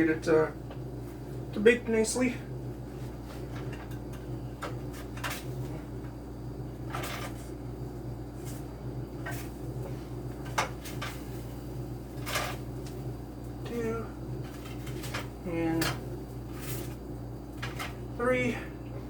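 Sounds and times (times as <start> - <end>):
steady low hum: 0.0 - 19.0
utensil scraping baking pan: 8.3 - 12.9, 14.4 - 18.1.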